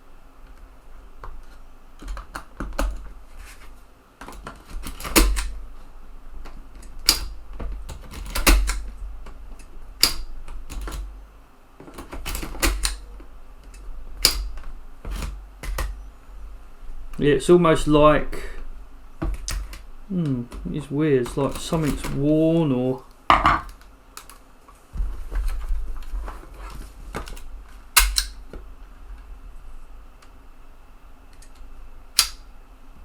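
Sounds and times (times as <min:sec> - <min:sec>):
floppy drive eject clicks: 0:04.2 - 0:05.7, 0:06.4 - 0:11.1, 0:11.8 - 0:16.0, 0:20.6 - 0:22.3, 0:27.2 - 0:28.4, 0:32.2 - 0:32.4.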